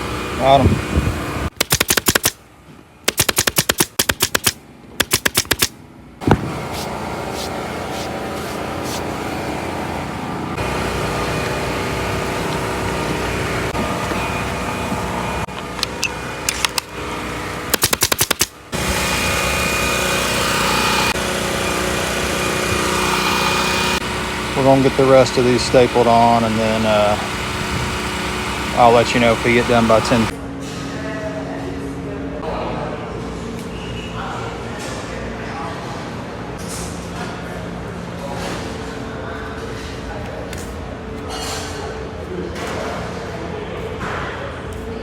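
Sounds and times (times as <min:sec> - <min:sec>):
staple gun clicking: 0:01.6 - 0:02.4, 0:03.1 - 0:05.7, 0:17.8 - 0:18.5
engine hum: 0:04.5 - 0:30.5.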